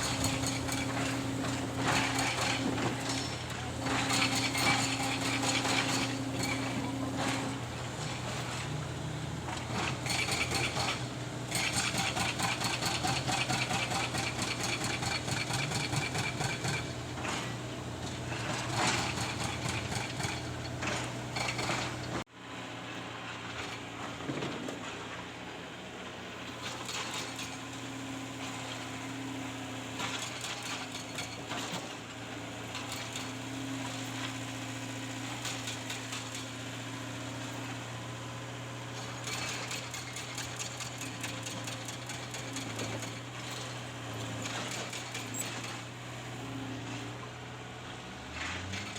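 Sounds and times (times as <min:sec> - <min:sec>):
excavator engine running: 0:00.0 - 0:22.2.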